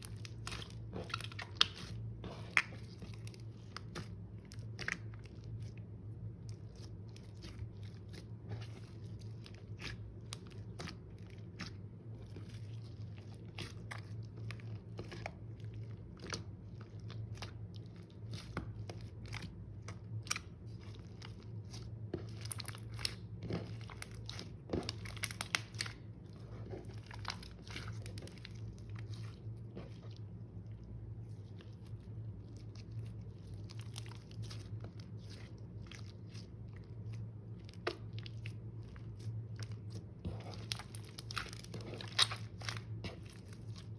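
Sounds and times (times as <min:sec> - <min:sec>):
slime squishing and crackling: 0:00.0 - 0:43.9.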